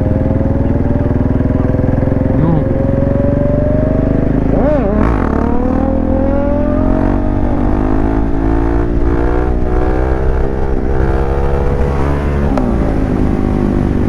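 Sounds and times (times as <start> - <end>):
motorcycle engine running: 0.0 - 14.0.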